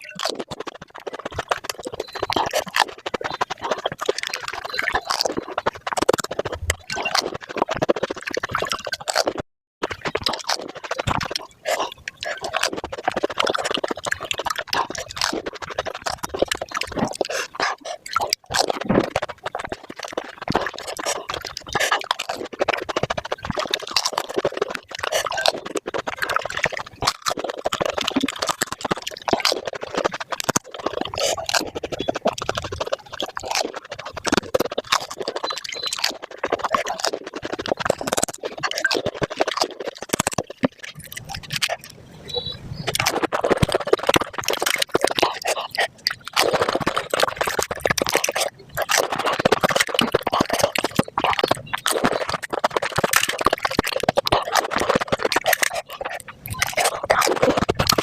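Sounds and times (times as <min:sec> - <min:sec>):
slurping water: 0:00.0 - 0:58.0.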